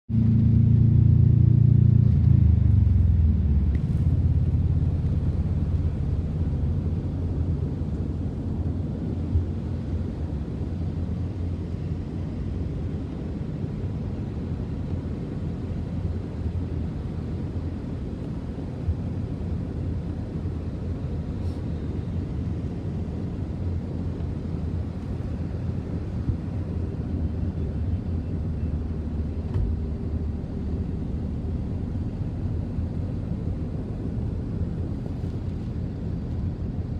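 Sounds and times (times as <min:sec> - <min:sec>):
vehicle engine running: 0:00.1 - 0:13.9.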